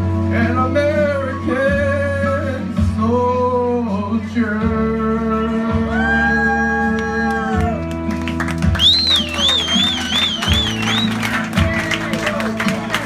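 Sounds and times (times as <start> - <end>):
instrumental guitar music: 6.6 - 13.0.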